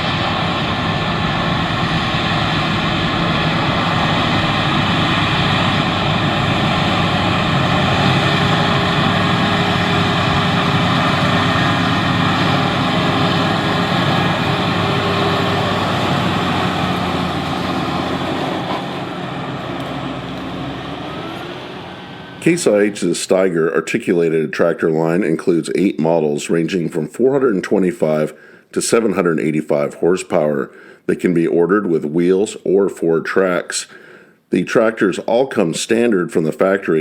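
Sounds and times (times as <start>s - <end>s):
tractor diesel engine droning: 0.0s - 26.3s.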